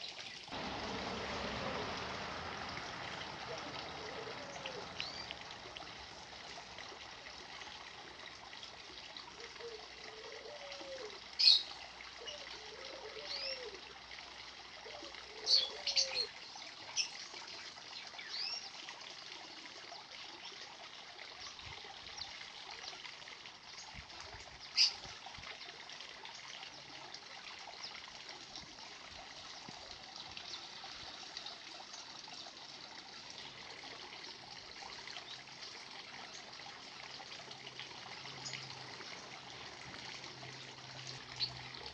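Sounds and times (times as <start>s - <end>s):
trickle of running water: 0.0s - 41.9s
birds calling: 0.6s - 6.4s.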